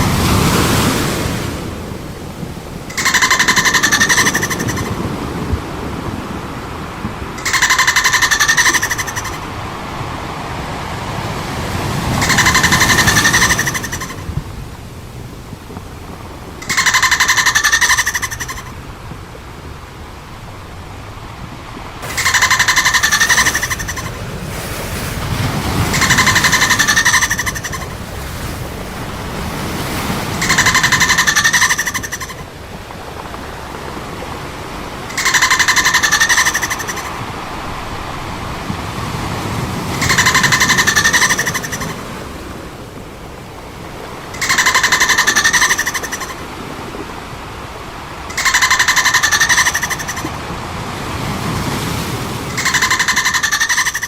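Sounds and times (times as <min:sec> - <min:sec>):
dolphin pulsed buzzy calls: 0:02.9 - 0:05.4, 0:07.4 - 0:09.5, 0:11.2 - 0:14.4, 0:16.6 - 0:18.8, 0:22.0 - 0:28.6, 0:29.5 - 0:32.5, 0:35.1 - 0:37.3, 0:39.9 - 0:42.2, 0:44.3 - 0:47.0, 0:48.2 - 0:50.4, 0:52.5 - 0:54.0.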